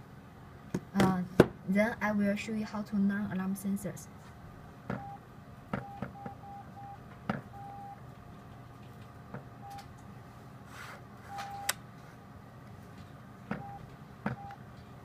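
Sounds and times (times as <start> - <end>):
short keypad beeps: 5.0 - 5.2, 5.8 - 7.0, 7.6 - 8.0, 11.3 - 11.7, 13.6 - 14.6.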